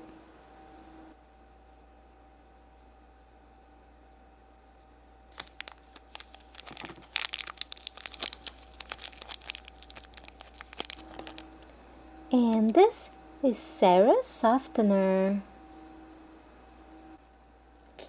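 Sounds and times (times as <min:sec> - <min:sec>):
plastic packaging crinkling: 0:05.3 - 0:11.7.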